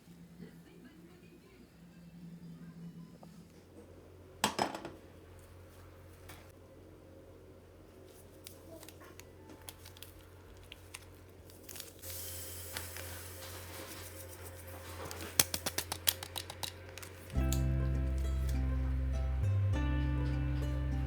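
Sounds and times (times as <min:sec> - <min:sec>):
packaging crinkling and rustling: 0:08.0 - 0:17.6
steady low hum: 0:12.2 - 0:21.0.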